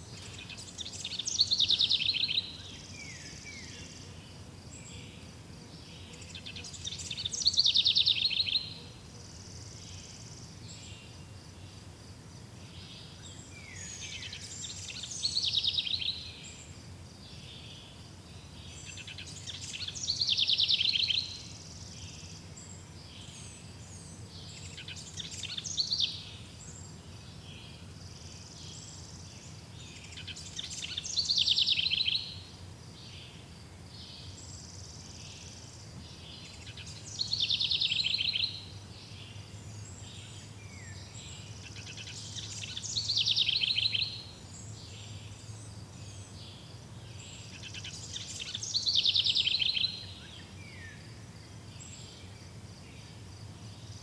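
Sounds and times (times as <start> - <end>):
songbird trilling: 30.0 - 32.4, 36.4 - 39.4, 40.2 - 44.3, 47.4 - 50.9.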